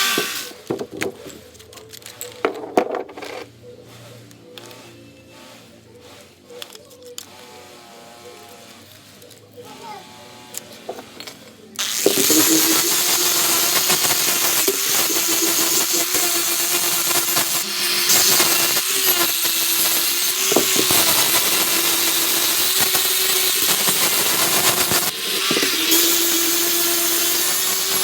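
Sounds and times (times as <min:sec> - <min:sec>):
electric power tool grinding: 0:00.0 - 0:00.6, 0:10.5 - 0:28.0.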